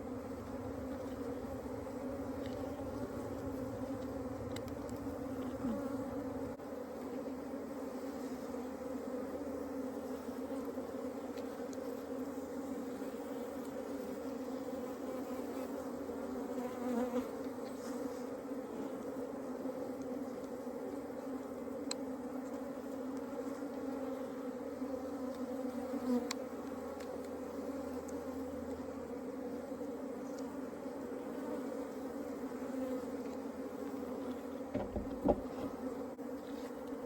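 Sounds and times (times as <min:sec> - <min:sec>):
low rumble: 0:00.0 - 0:06.6
honeybees buzzing: 0:00.0 - 0:37.0.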